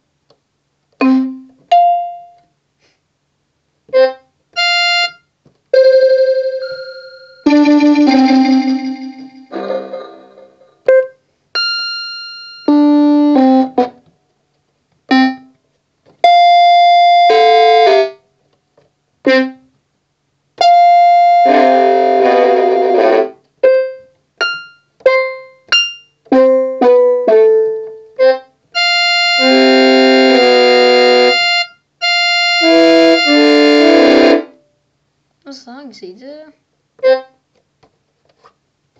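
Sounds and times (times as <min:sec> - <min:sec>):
electronic keyboard chords and notes: 0:01.0 - 0:02.4, 0:07.5 - 0:14.0, 0:16.2 - 0:18.2, 0:20.6 - 0:34.6.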